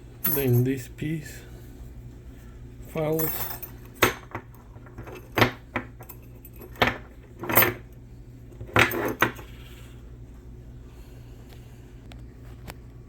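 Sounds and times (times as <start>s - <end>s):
small metal parts clinking: 0.2s - 0.8s, 3.1s - 8.0s, 8.6s - 9.6s.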